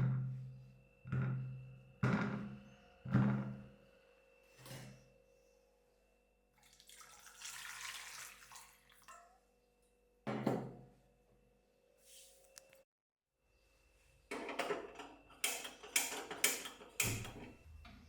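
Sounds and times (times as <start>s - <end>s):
water running from a tap: 6.6s - 9.2s.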